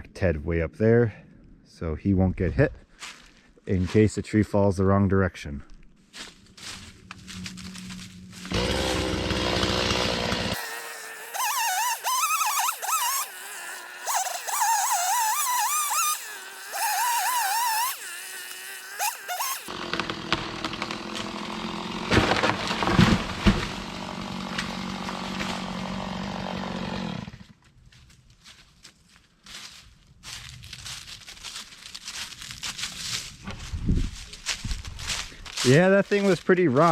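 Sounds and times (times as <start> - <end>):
chainsaw cutting wood: 7.2 - 27.6
wood cracking and thudding: 19.7 - 26.4.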